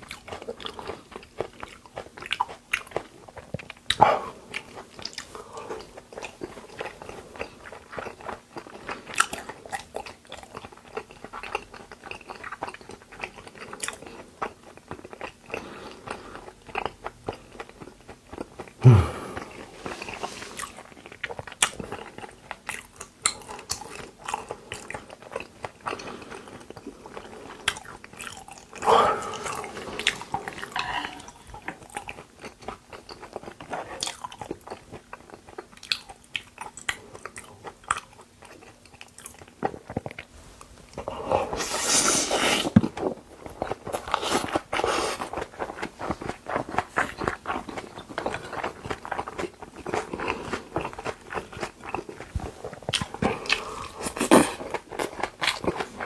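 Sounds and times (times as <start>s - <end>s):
close-miked chewing: 0.0s - 56.0s.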